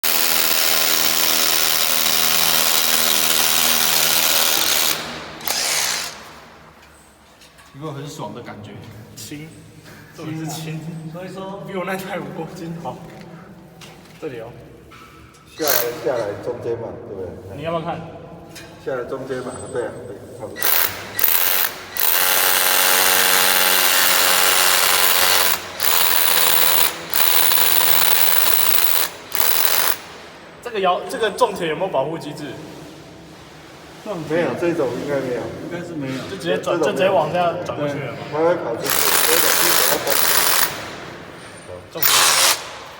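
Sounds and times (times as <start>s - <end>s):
electric drill drilling: 0.0s - 6.4s, 20.6s - 30.1s, 38.9s - 40.8s, 42.0s - 42.9s.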